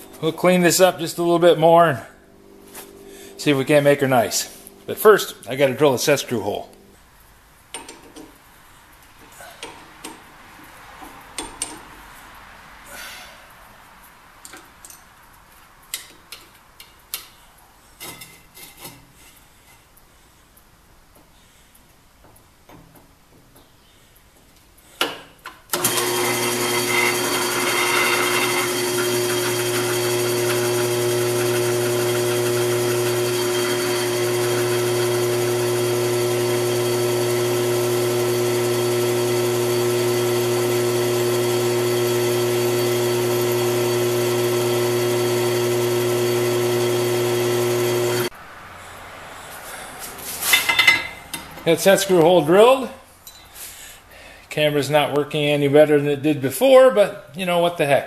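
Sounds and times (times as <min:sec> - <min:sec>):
electric drill drilling steel: 0:25.7 - 0:48.3.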